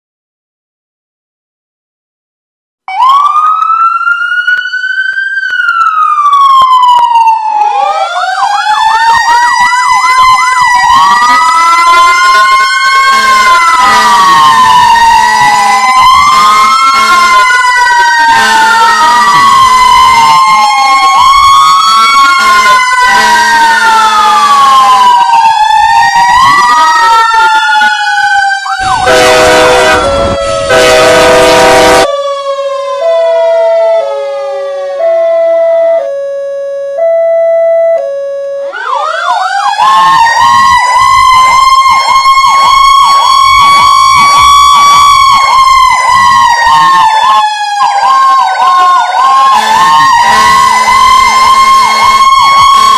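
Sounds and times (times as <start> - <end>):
emergency vehicle sirens: 2.9 - 52.9
two-tone hi-lo siren: 2.9 - 52.9
loud horn blast: 13.1 - 14.4, 16.6 - 17.4, 18.3 - 19.2, 21.9 - 24.4, 28.8 - 32.1, 49.5 - 52.2.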